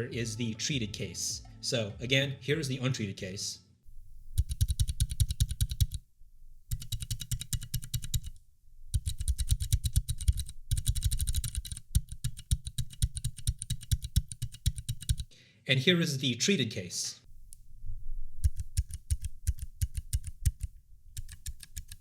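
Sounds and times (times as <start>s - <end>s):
mechanical keyboard typing: 4.4s - 6.0s, 6.7s - 15.3s, 18.4s - 22.0s.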